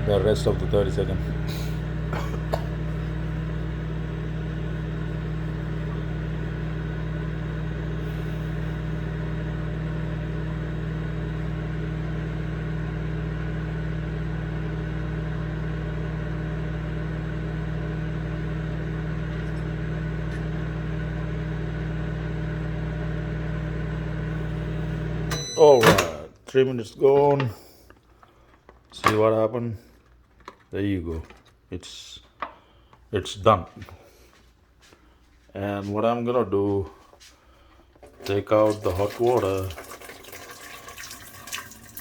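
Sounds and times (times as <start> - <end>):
microwave oven humming: 0.0 - 26.4, 38.0 - 42.0.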